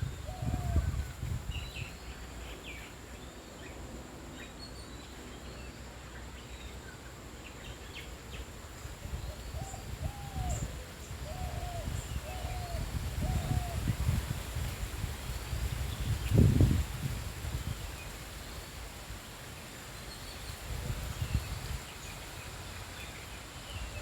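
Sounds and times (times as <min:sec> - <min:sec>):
low arching bird calls: 0:08.9 - 0:14.0.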